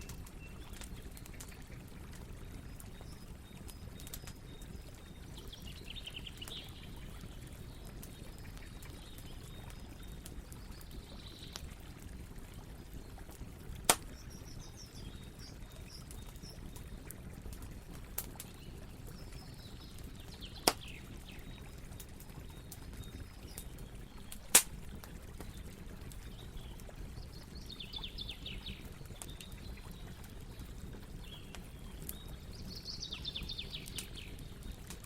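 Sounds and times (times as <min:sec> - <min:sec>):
campfire crackling: 0:00.0 - 0:35.0
campfire loud pops: 0:13.9 - 0:14.2, 0:20.6 - 0:21.0, 0:24.5 - 0:24.9.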